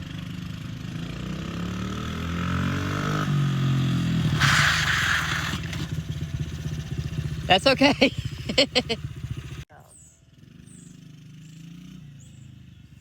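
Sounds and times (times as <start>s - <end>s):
dirt bike engine revving: 0.2s - 9.7s.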